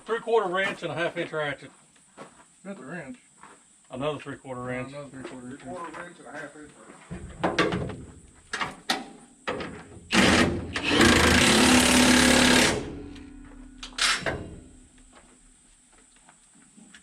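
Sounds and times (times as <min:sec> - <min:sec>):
impact wrench hammering: 0:10.1 - 0:14.9.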